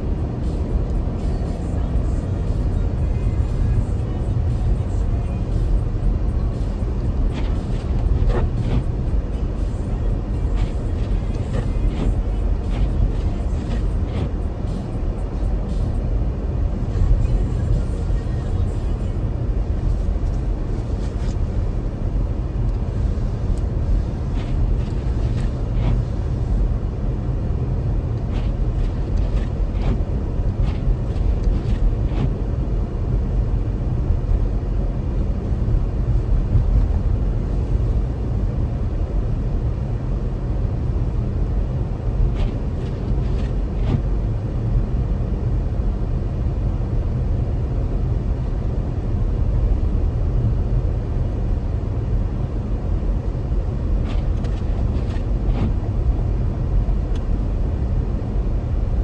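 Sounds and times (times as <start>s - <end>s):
car driving low rumble: 0.0s - 59.0s.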